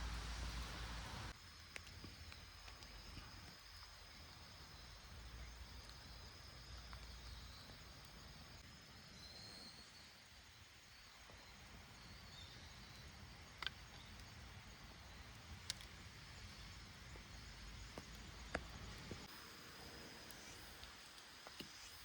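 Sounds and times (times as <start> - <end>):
low steady rumble: 0.0 - 1.4
campfire crackling: 0.0 - 8.7, 11.1 - 22.0.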